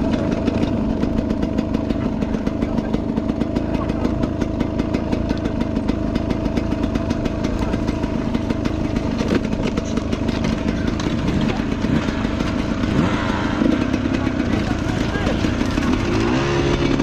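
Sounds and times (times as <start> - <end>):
motorcycle engine running steadily: 0.0 - 17.0.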